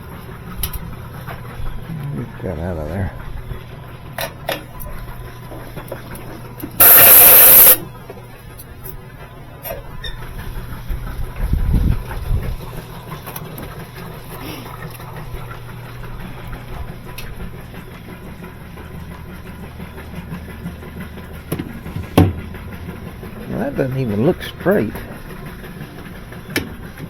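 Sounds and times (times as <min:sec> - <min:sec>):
motor humming: 0:06.8 - 0:07.8.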